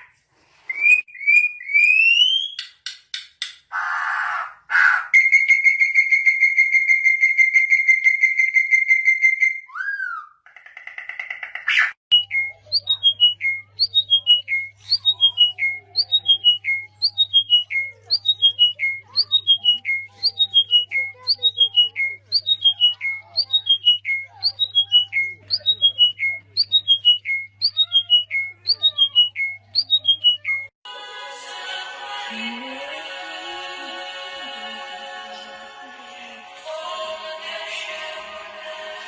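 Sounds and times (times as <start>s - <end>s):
songbird trill: 12.1s - 30.7s.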